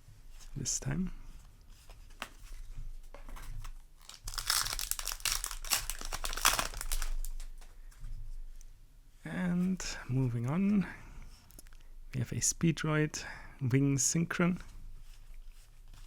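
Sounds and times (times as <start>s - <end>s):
foil wrapper tearing and crinkling: 4.0s - 7.5s.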